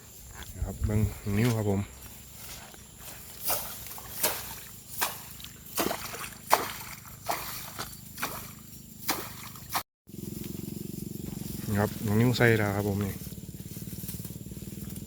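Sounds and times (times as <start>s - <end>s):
footsteps splashing through water: 1.4s - 9.8s.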